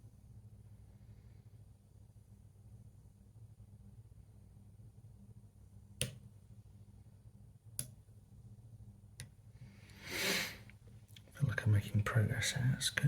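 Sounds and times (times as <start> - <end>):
short breathy hiss: 9.8 - 10.7.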